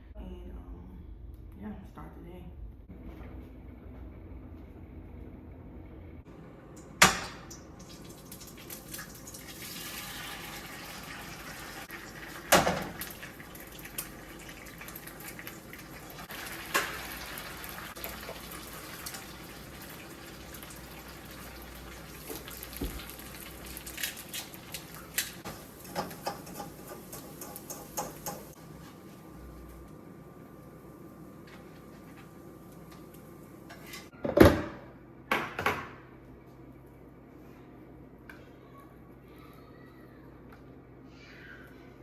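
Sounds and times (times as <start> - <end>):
water running from a tap: 7.5 - 25.2.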